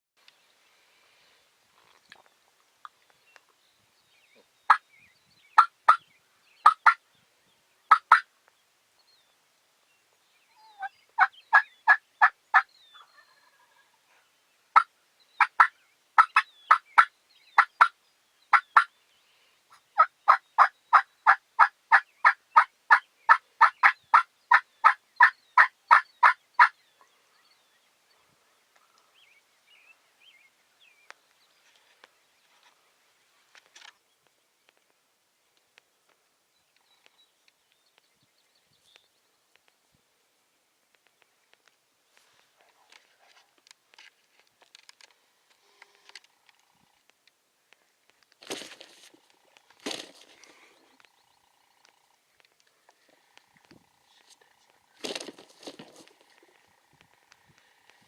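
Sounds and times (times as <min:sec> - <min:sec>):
turkey yelping: 0:14.8 - 0:17.9, 0:23.3 - 0:26.7.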